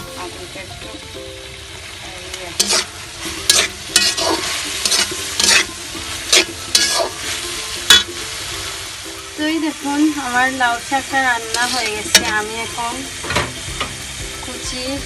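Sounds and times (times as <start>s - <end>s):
food sizzling in a pan: 0.0s - 15.0s
spatula scraping in a pan: 2.6s - 8.2s, 11.1s - 12.7s.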